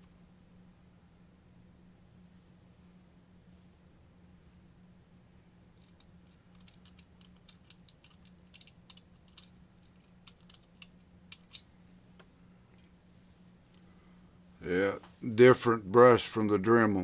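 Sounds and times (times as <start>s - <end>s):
faint steady hum: 0.0s - 17.0s
small parts clicking and tapping: 5.8s - 12.9s.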